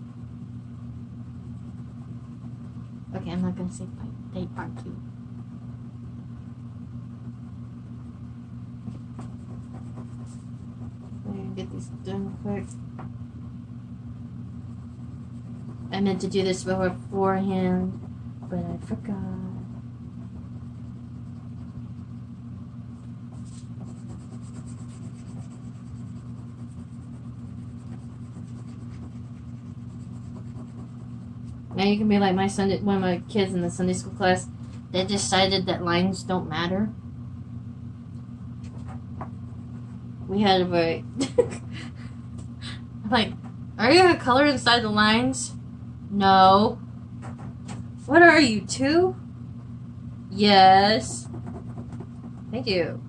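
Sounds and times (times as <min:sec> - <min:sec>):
low room hum: 0:00.0 - 0:53.0
crayon scribbling on paper: 0:09.2 - 0:12.7, 0:14.7 - 0:22.1, 0:23.3 - 0:32.1, 0:50.9 - 0:52.6
faint scratches: 0:23.3 - 0:31.8.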